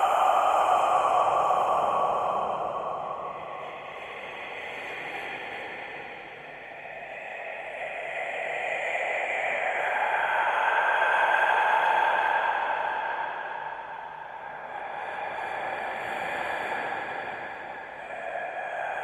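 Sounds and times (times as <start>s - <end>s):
breathy hissing whisper: 17.8s - 19.0s.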